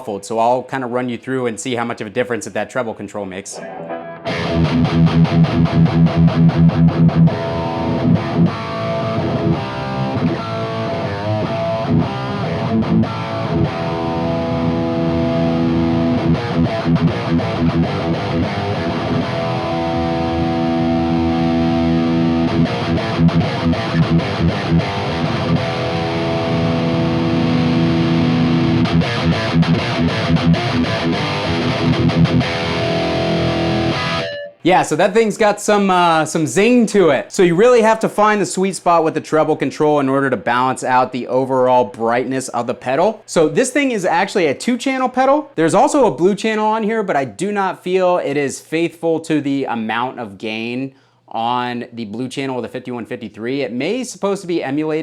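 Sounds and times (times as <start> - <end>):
distorted electric guitar: 3.5 - 34.7.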